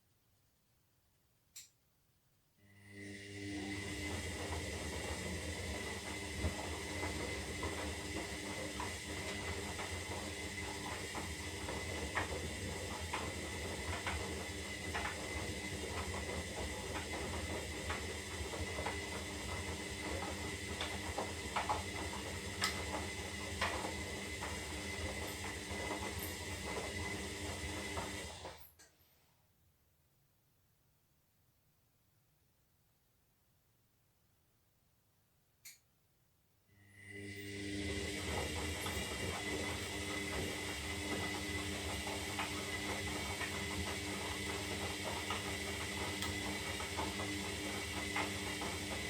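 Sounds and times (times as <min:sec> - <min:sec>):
washing machine running: 0:02.8 - 0:28.7, 0:36.8 - 0:49.0.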